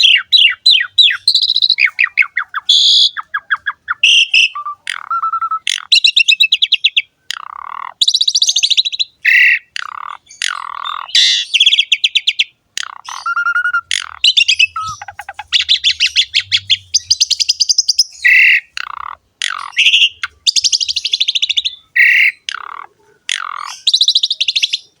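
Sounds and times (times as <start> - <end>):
myna singing trills and whistles: 0.0 - 7.0, 10.9 - 18.7.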